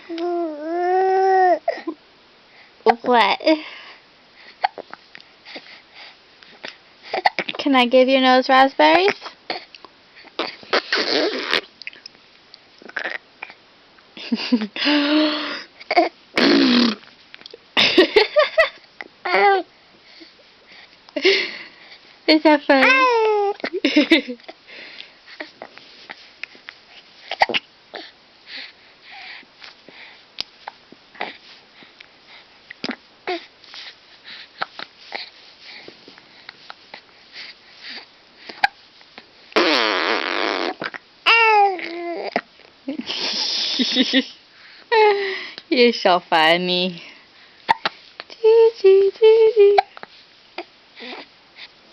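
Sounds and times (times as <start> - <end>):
soft breathing: 1.6 - 2.9, 3.5 - 7.3, 14.7 - 15.9, 19.4 - 22.3, 24.5 - 39.4, 43.0 - 45.7, 46.9 - 48.3, 49.9 - 51.9
small mouth noises: 9.1 - 13.6, 32.7 - 33.0, 39.6 - 41.1
blown raspberry: 10.4 - 11.7, 16.4 - 17.0, 39.6 - 41.0
spluttering lip buzzes: 10.4 - 11.8, 16.4 - 17.0, 39.6 - 41.0.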